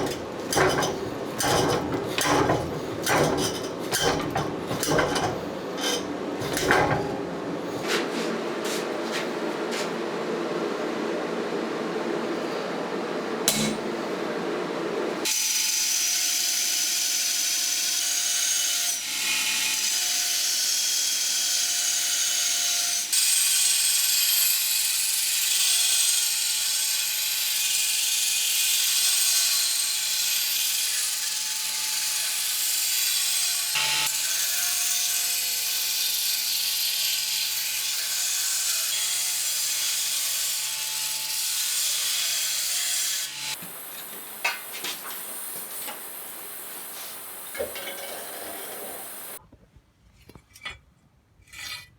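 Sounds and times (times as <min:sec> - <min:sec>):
power grinder grinding steel: 0:00.0 - 0:07.3, 0:17.9 - 0:49.4.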